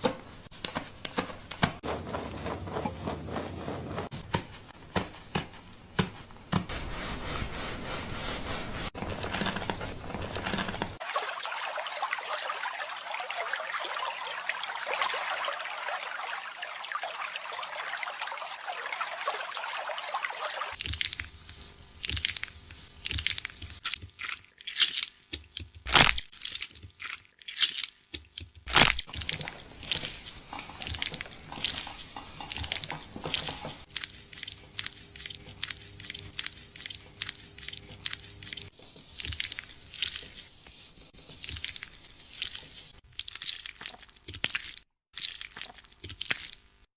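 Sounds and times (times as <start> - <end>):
fingers scratching wet hair: 0.6 - 4.7, 6.7 - 11.0, 29.1 - 43.0
running water rinsing hair: 6.7 - 23.8, 29.0 - 42.9.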